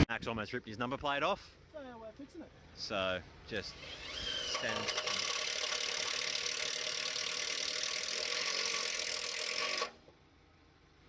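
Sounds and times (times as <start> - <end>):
power drill driving a screw: 3.7 - 10.0.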